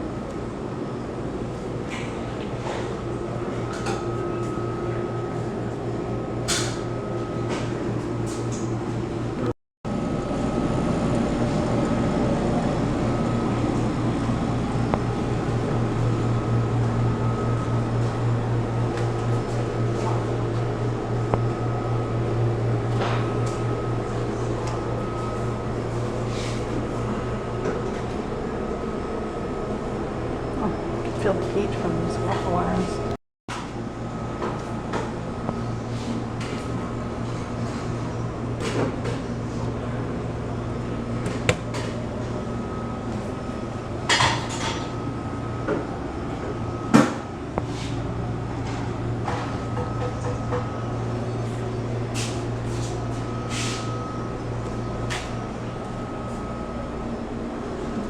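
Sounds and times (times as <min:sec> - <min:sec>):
ventilation hum: 0:00.0 - 0:58.0.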